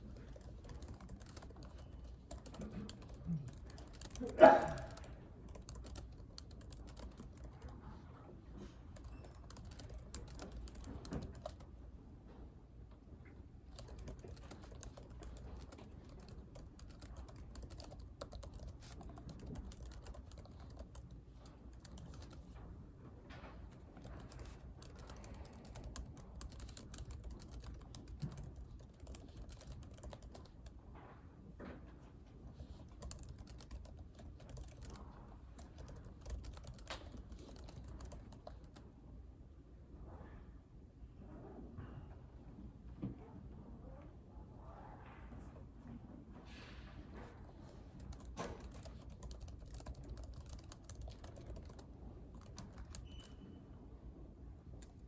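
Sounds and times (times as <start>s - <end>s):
keyboard typing: 0.0s - 7.8s, 8.9s - 11.8s, 13.7s - 22.6s, 23.7s - 30.8s, 32.6s - 38.8s, 47.6s - 53.5s, 54.6s - 55.0s.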